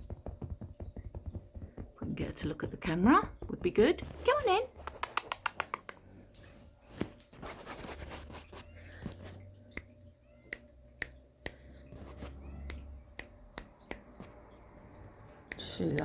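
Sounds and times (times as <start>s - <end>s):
sharp clicks: 3.6s - 6.0s.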